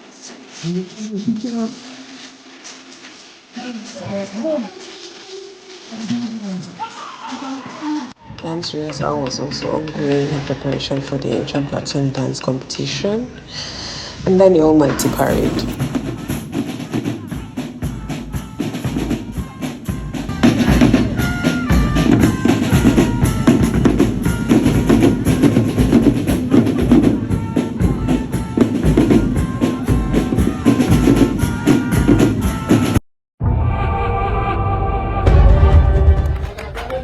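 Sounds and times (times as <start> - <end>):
drum-heavy music: 14.3 - 33.0, 35.2 - 37.0.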